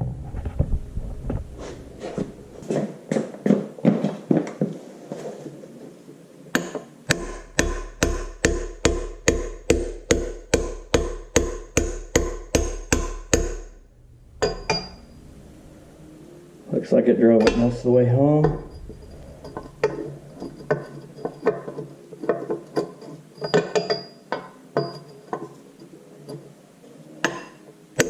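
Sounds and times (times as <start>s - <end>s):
hammer striking metal socket: 14.4s - 15.0s, 19.4s - 25.6s.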